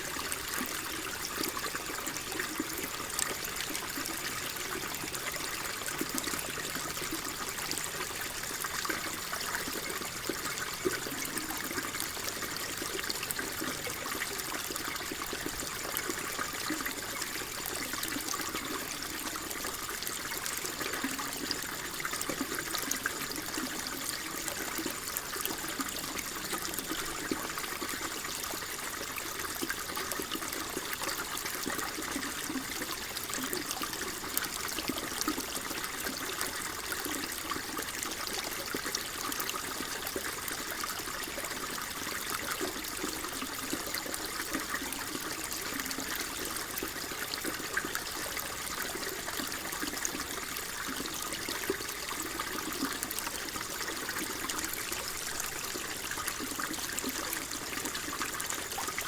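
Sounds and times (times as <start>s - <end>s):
water flowing and trickling: 0.0s - 59.0s.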